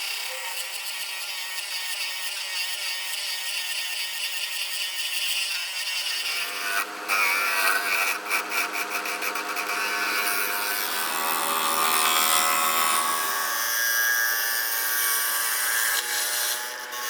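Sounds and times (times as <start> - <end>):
cutting tool hissing on lathe: 0.0 - 17.0
lathe motor hum: 6.4 - 17.0.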